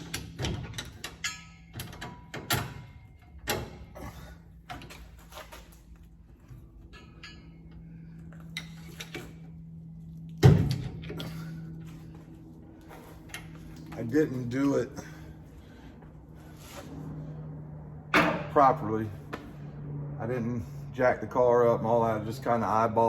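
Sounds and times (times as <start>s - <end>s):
metal tools clanking and knocking: 0.0s - 5.1s, 6.8s - 7.9s, 18.1s - 18.8s
steady low hum: 0.0s - 23.0s.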